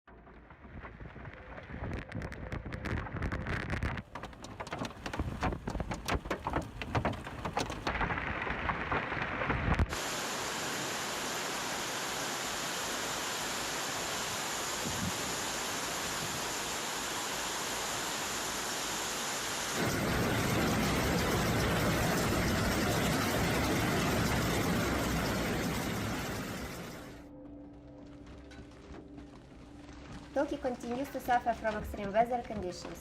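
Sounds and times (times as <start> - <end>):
hailstones clattering on hard surfaces: 1.2 - 9.9, 19.8 - 27.0, 28.6 - 33.0
heavy rain: 1.4 - 27.2.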